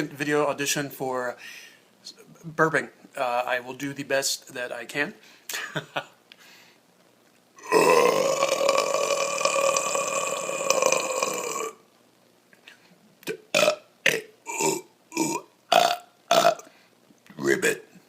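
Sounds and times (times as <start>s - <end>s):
man burping: 7.6s - 11.8s, 13.2s - 16.7s.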